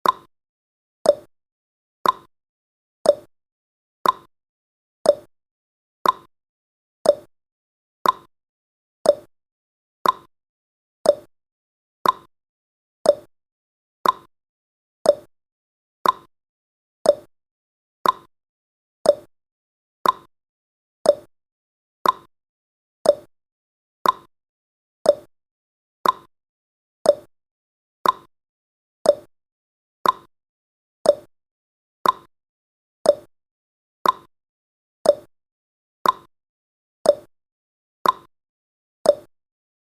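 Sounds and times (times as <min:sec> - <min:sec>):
clock ticking: 0:02.0 - 0:02.3, 0:04.0 - 0:04.3, 0:06.0 - 0:06.3, 0:08.0 - 0:08.3, 0:10.0 - 0:10.3, 0:12.0 - 0:12.3, 0:14.0 - 0:14.3, 0:16.0 - 0:16.3, 0:18.0 - 0:18.3, 0:20.0 - 0:20.3, 0:21.1 - 0:21.3, 0:22.0 - 0:22.3, 0:24.0 - 0:24.3, 0:26.0 - 0:26.3, 0:28.0 - 0:28.3, 0:29.1 - 0:29.3, 0:30.0 - 0:30.3, 0:31.1 - 0:31.3, 0:32.0 - 0:32.3, 0:33.1 - 0:33.3, 0:34.0 - 0:34.3, 0:35.1 - 0:35.3, 0:36.0 - 0:36.3, 0:38.0 - 0:38.3.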